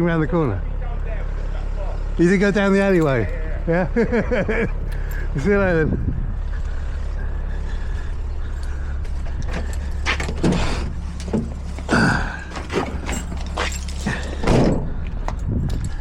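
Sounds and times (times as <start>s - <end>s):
steady low rumble: 0.0s - 16.0s
van door clunks: 9.1s - 16.0s.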